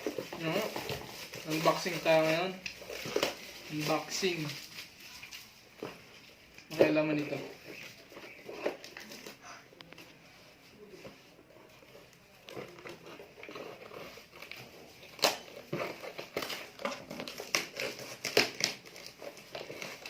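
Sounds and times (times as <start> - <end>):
parcel wrapping torn open: 0.0 - 9.9, 11.8 - 20.0.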